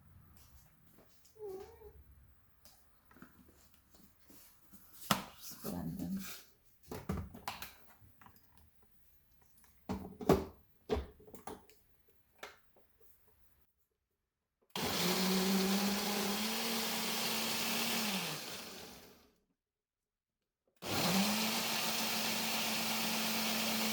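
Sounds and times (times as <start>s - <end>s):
electric blender motor running: 14.8s - 19.3s, 20.8s - 23.9s.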